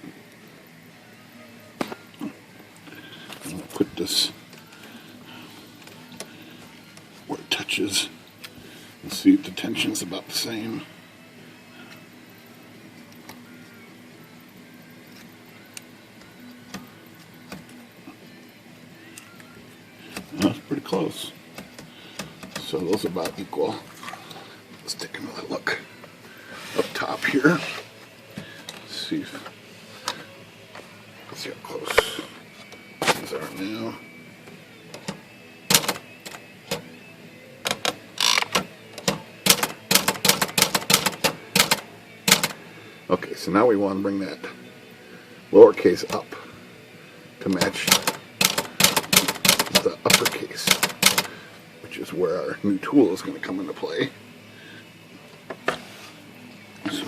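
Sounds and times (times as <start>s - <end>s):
typewriter mechanism clicks: 35.7s - 36.8s, 37.7s - 42.6s, 47.5s - 51.3s.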